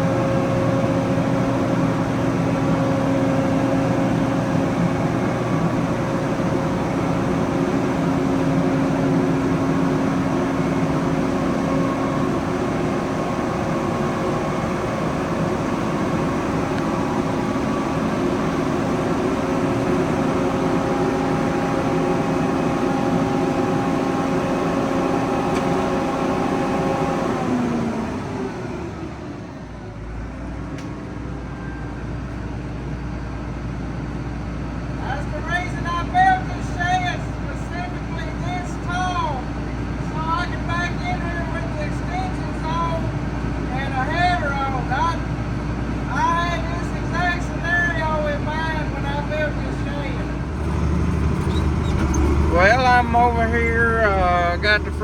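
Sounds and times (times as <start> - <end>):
farm machine engine running: 0.0 - 30.2, 33.2 - 55.0
low engine rumble: 0.0 - 55.0
machine whine: 50.5 - 55.0.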